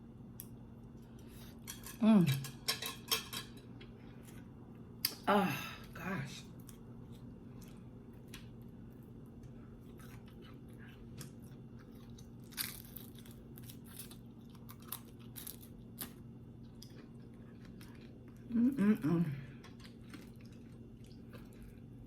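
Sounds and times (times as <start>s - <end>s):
steady low hum: 0.0s - 22.0s
chewing and crunching: 6.5s - 22.0s.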